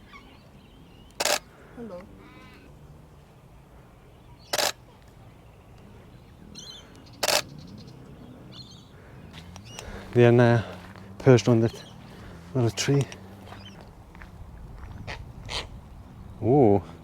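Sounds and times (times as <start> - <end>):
faint bird calls: 0.0 - 17.0
camera shutter bursts: 1.2 - 1.5, 4.5 - 4.8, 7.2 - 7.5.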